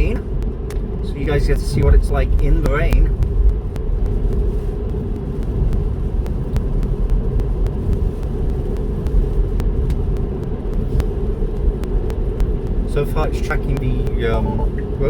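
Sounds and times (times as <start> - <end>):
road and tyre rumble: 0.0 - 15.0.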